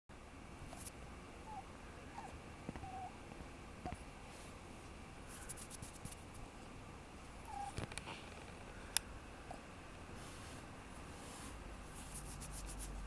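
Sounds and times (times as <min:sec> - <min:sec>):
puppy whimpering squeaks: 0:02.2 - 0:03.1, 0:07.5 - 0:07.8
soft rustling: 0:10.1 - 0:13.0.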